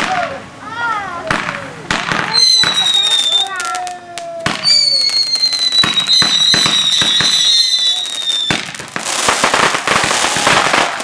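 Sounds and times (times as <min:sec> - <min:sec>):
firework pops and cracks: 0:01.2 - 0:11.0
firework whistle falling in pitch: 0:04.6 - 0:08.6.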